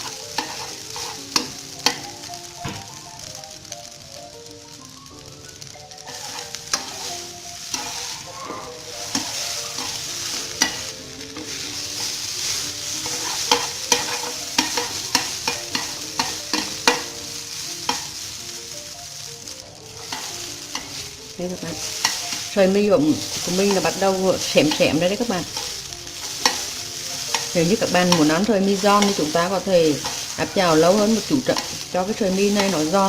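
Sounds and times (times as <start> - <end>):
utensil scraping and tapping pan: 0.0 - 2.1, 6.1 - 12.1, 13.0 - 17.2
noodles sizzling in oil: 0.0 - 33.0.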